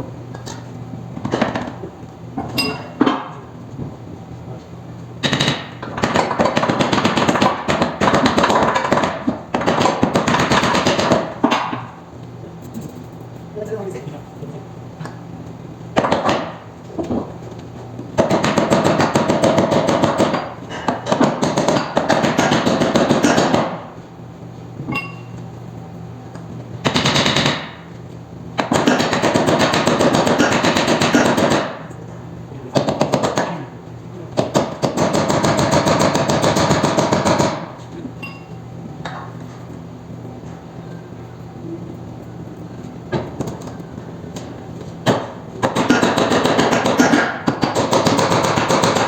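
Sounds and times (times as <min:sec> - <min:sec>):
steady low hum: 0:00.0 - 0:21.7, 0:22.8 - 0:49.0
impact wrench hammering: 0:45.1 - 0:49.0.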